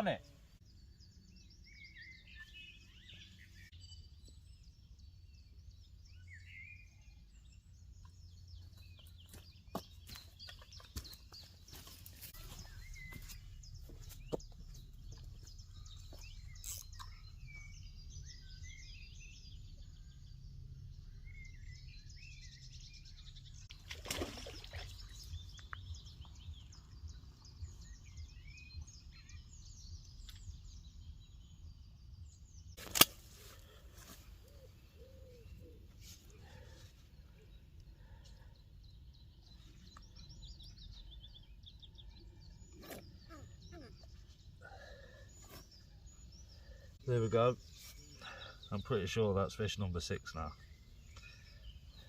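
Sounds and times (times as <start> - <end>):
small birds chirping: 0.0 - 52.0
sharp loud click: 32.8 - 33.2.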